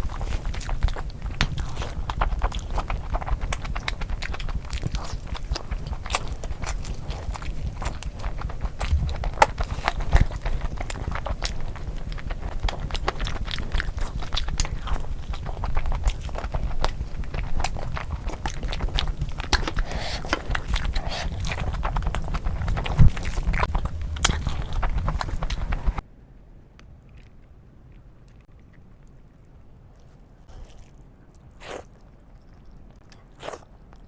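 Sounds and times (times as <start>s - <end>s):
person chewing and smacking: 0.0s - 26.0s, 27.0s - 34.0s
low steady rumble: 0.0s - 34.0s.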